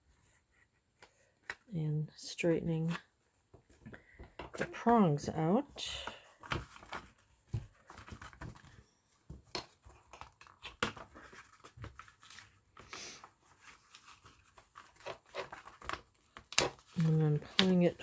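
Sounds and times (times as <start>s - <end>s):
paper pages rustling: 5.7s - 18.0s.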